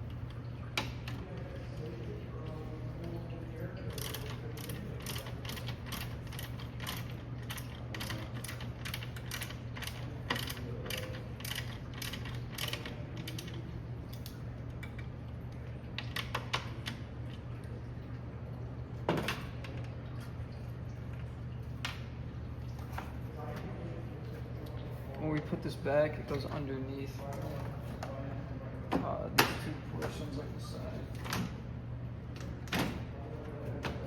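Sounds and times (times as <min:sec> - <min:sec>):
steady low hum: 0:00.0 - 0:34.0
hand ratchet clicking: 0:04.0 - 0:13.6.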